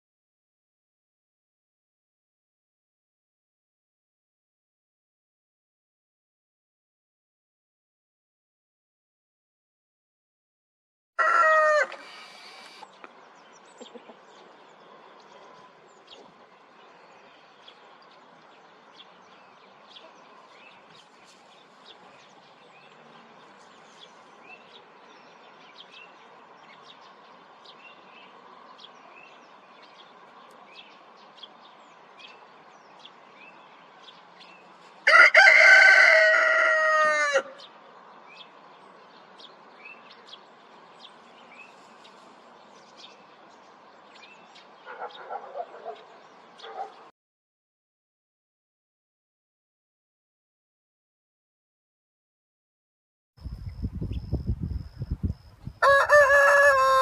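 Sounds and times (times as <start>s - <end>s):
rooster crowing: 11.2s - 12.8s, 35.0s - 37.7s, 55.8s - 57.0s
small birds chirping: 12.0s - 35.0s, 37.6s - 47.1s, 53.4s - 57.0s.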